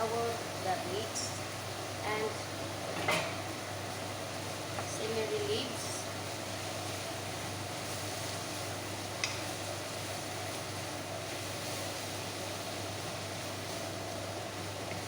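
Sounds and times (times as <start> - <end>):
vegetables cooking in a pan: 0.0 - 15.0.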